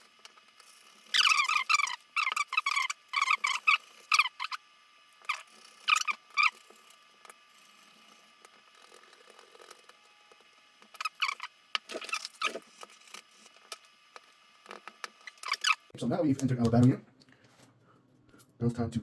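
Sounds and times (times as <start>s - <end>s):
battery squeaking and rubbing: 0.0s - 10.1s, 10.8s - 15.9s.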